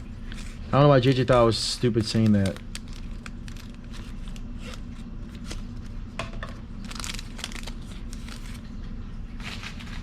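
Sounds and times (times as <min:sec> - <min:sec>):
wrapper crinkling: 0:00.0 - 0:06.1, 0:06.7 - 0:10.0
cards being flicked through: 0:01.1 - 0:04.5.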